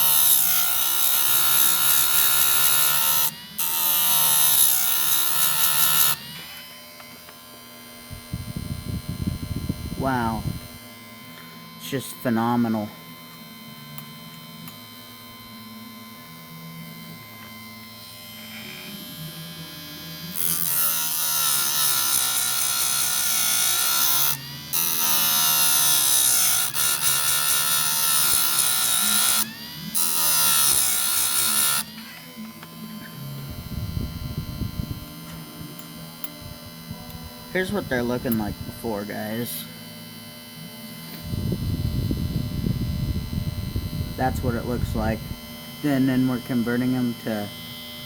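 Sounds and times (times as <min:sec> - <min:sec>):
grinder motor running: 0:00.0 - 0:48.0
grinding wheel on steel teeth: 0:20.4 - 0:35.0, 0:35.7 - 0:39.6.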